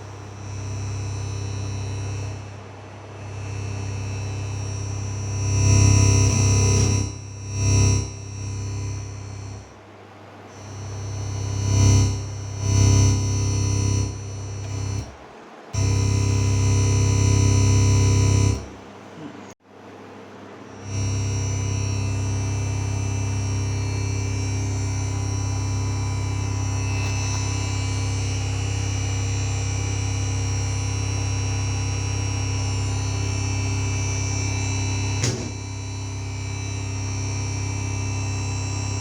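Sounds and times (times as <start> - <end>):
amplifier mains hum: 0.0 - 39.0
amplifier click: 35.2 - 35.7.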